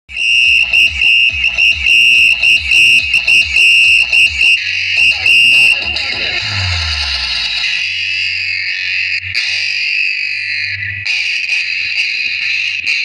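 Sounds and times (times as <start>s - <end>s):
high-pitched pulsing beeping tone: 0.1s - 7.8s
deep bass thumps: 0.1s - 7.9s.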